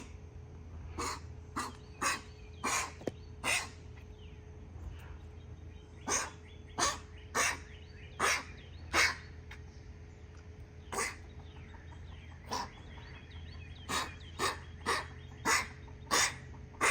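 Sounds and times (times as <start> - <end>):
dog coughing: 1.0 - 3.8, 6.1 - 9.2, 10.9 - 11.3, 13.9 - 16.9.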